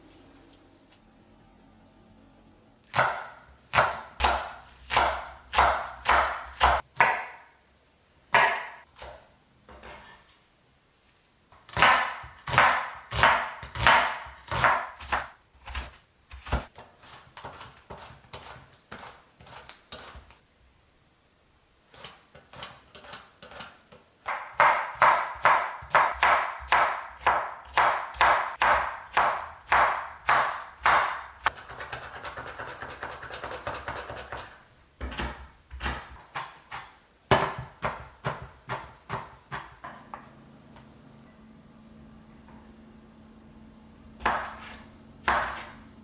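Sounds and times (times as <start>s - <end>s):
faint steady hum: 0.0s - 4.2s, 33.4s - 46.0s
knife chopping on cutting board: 2.9s - 7.4s, 8.4s - 9.2s, 11.7s - 20.3s, 22.0s - 40.2s, 44.2s - 45.8s.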